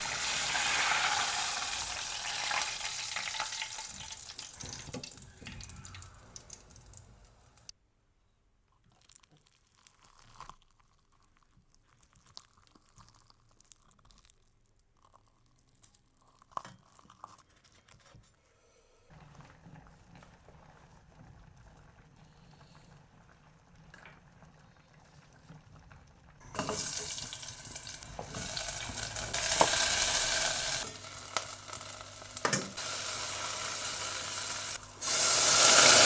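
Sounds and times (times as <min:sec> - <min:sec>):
hot oil sizzling and crackling: 0:00.0 - 0:07.7, 0:26.4 - 0:36.0.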